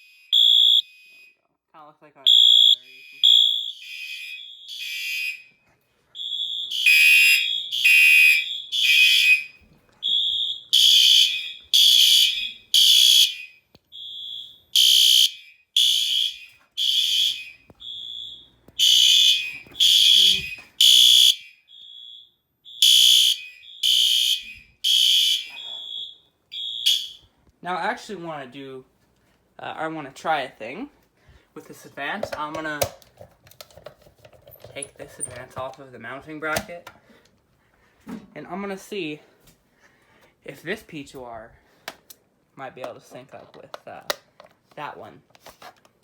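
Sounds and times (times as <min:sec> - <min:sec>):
fire alarm horn blasts: 0:00.0 - 0:01.4, 0:02.3 - 0:05.6, 0:06.2 - 0:27.3.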